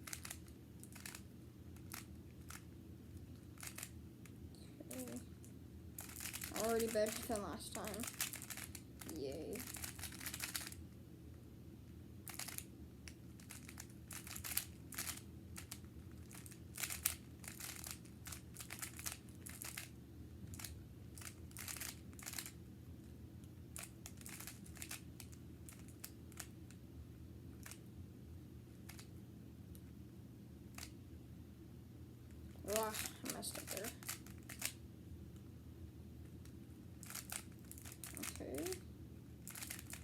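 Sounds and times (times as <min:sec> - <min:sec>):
puzzle cube clicking: 0:00.1 - 0:01.2, 0:03.6 - 0:03.9, 0:06.0 - 0:10.8, 0:12.3 - 0:12.6, 0:13.4 - 0:15.7, 0:16.3 - 0:19.9, 0:23.8 - 0:25.0, 0:39.5 - 0:40.0.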